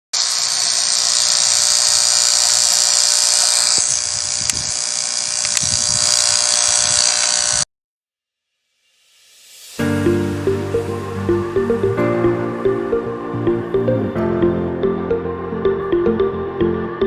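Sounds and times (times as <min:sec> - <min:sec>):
aquarium air pump buzzing: 0:00.2 - 0:07.7.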